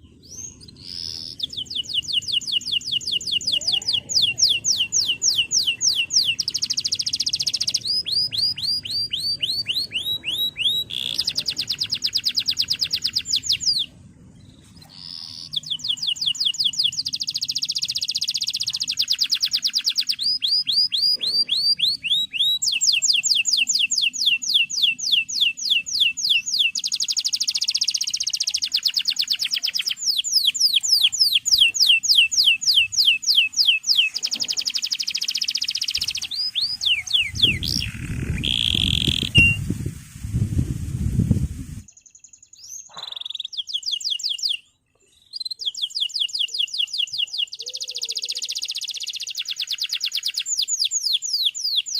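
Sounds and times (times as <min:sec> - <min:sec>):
canary singing trills: 0:00.0 - 0:39.8, 0:41.8 - 0:51.9.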